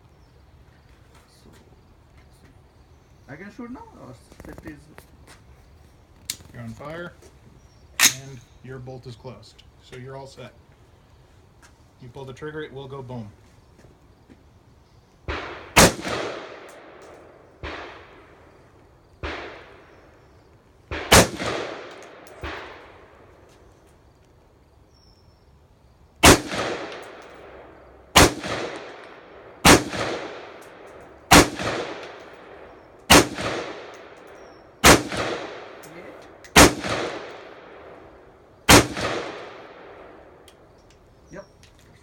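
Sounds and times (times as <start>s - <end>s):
faint distant gunshots: 15.2s - 18.6s, 19.2s - 20.2s, 20.9s - 23.5s, 26.2s - 40.7s
rifle shots: 15.3s - 18.4s, 19.2s - 20.0s, 20.9s - 23.3s, 26.2s - 40.5s.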